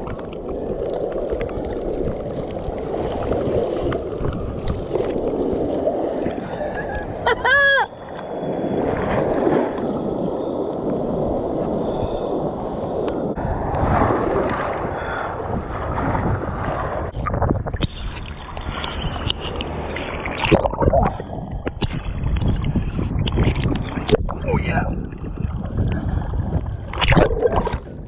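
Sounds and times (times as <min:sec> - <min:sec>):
ocean surf: 0:00.0 - 0:17.2
wind buffeting microphone: 0:08.4 - 0:28.0.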